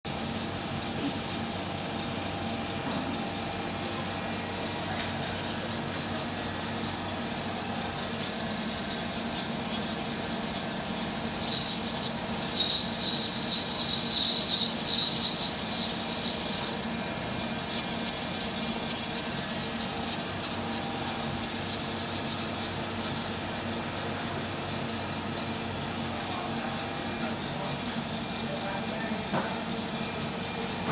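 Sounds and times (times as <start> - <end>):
thin high tone: 5.2 - 25.1
high wavering squeal: 5.2 - 25.2
lathe humming: 5.2 - 27.5
fast fine ticking: 8.5 - 23.3.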